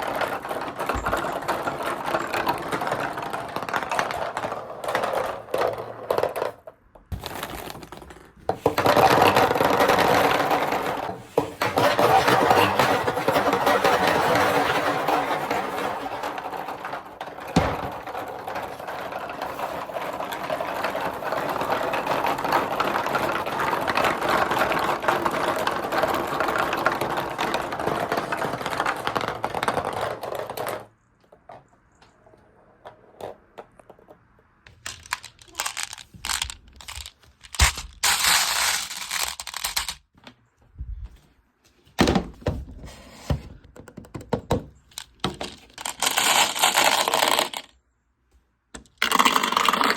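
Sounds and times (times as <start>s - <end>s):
marbles rattling down marble run: 0.0s - 6.6s, 7.2s - 30.9s, 34.7s - 40.0s, 44.9s - 47.7s, 48.8s - 49.9s.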